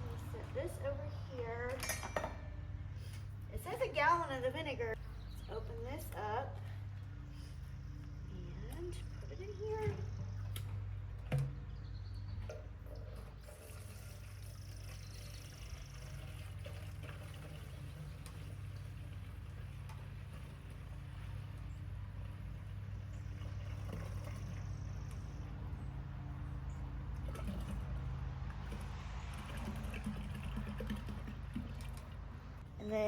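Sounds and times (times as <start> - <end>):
liquid pouring and glugging: 12.8 - 19.7, 27.2 - 32.5.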